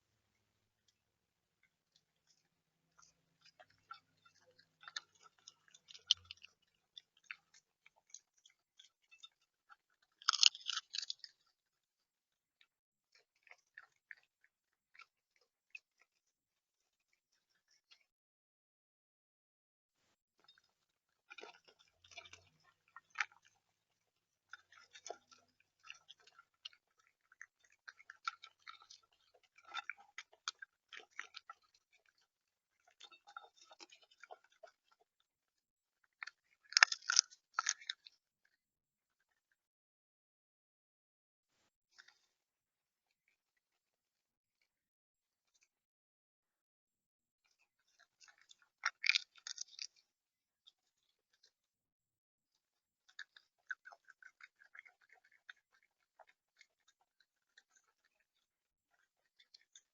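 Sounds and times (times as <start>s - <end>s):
bird pecking and cracking seeds: 3.0s - 11.6s, 24.5s - 35.2s, 36.0s - 38.2s, 47.6s - 51.5s, 53.0s - 59.9s.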